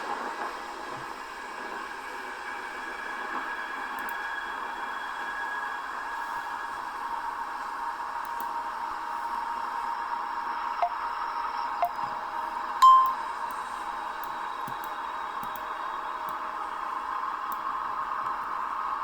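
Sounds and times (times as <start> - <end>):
bright ping: 12.8 - 13.2
faint clicks: 14.2 - 15.6.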